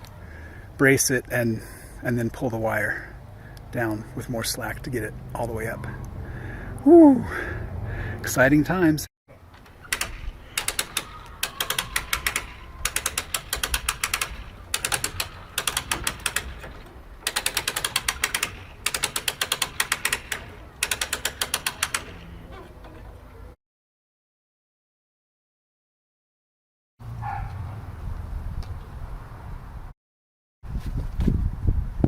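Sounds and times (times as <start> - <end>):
winch ratchet clicking: 9.5 - 23.4.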